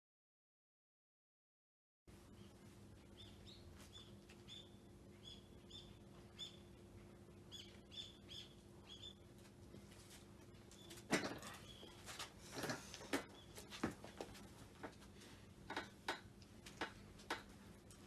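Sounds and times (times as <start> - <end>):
steady low hum: 2.1 - 18.0
small birds chirping: 2.3 - 9.4, 10.5 - 12.2, 13.0 - 14.4.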